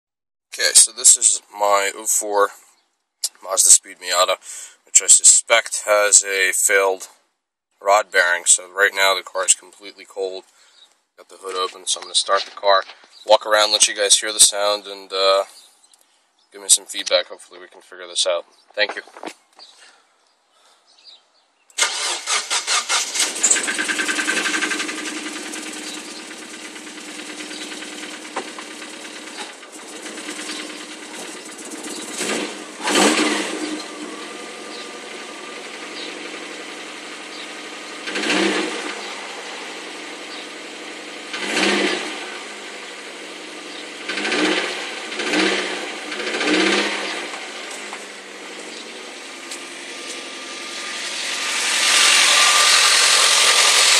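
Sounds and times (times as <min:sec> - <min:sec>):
car engine starting and idling: 0:21.8 - 0:53.9
engine revving: 0:21.8 - 0:53.9
engine knock: 0:23.3 - 0:33.5, 0:51.8 - 0:53.9.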